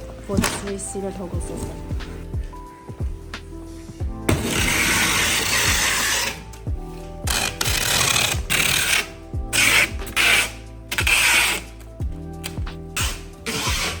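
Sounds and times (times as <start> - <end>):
background music: 0.0 - 14.0
rasping scraping bursts: 4.3 - 6.6, 7.3 - 11.9, 12.9 - 14.0.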